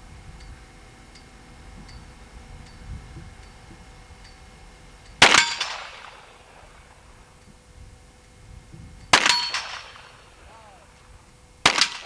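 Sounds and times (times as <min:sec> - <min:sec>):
short metallic ring: 0:05.0 - 0:06.9, 0:09.0 - 0:10.8.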